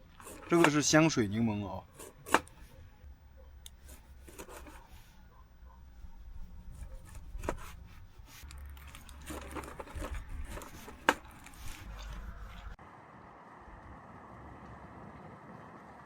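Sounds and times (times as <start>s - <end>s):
objects rustling and scraping: 0.0s - 1.0s, 3.7s - 5.4s, 6.0s - 12.8s.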